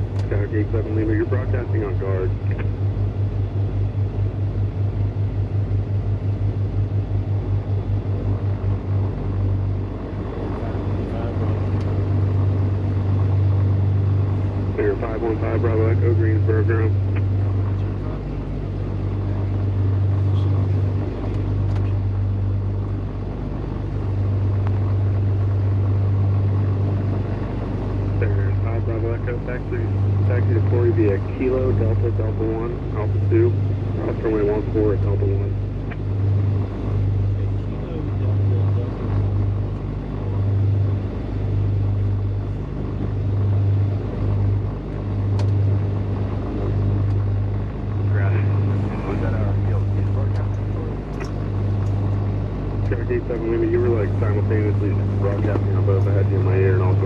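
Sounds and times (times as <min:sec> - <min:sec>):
piston aircraft engines idling: 0:00.0 - 0:57.0
click: 0:45.4 - 0:45.6.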